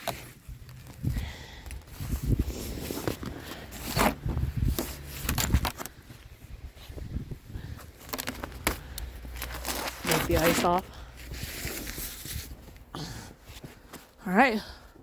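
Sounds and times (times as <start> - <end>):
snow and ice crunching: 0.0 - 12.8.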